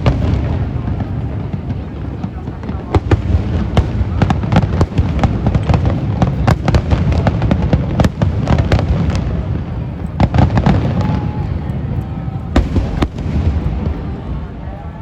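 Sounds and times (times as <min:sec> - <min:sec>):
fireworks crackles and pops: 0:00.0 - 0:15.0.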